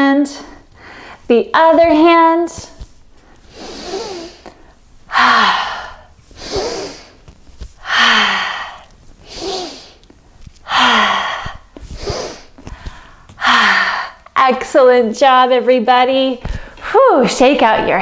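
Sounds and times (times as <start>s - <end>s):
woman breathing hard: 0.3s - 1.3s, 3.1s - 14.4s.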